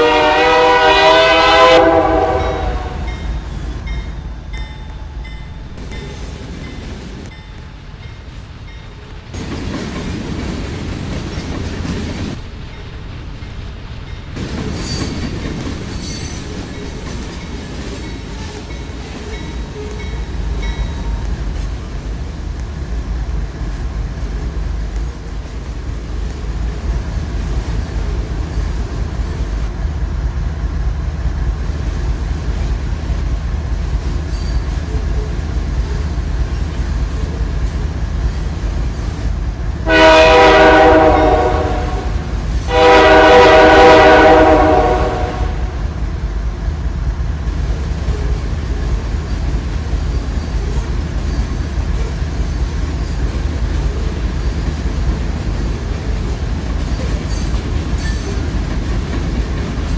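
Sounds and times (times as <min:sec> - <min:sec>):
train rumbling on rails: 0:00.0 - 0:59.9
steel wheel squeal: 0:14.7 - 0:21.2, 0:34.2 - 0:36.3, 0:56.9 - 0:58.5.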